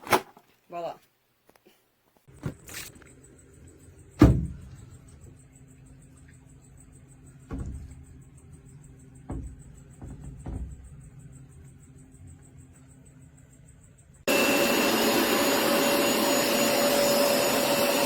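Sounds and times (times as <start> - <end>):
dull thumps: 7.5 - 8.2, 9.2 - 11.3.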